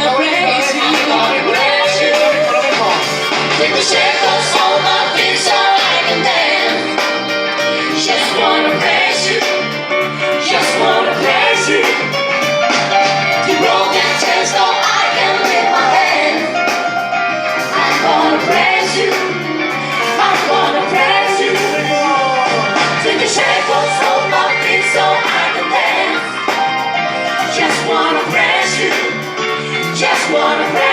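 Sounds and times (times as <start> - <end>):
person singing: 0.0 - 6.9, 20.1 - 26.2
band playing amplified music: 0.0 - 30.9.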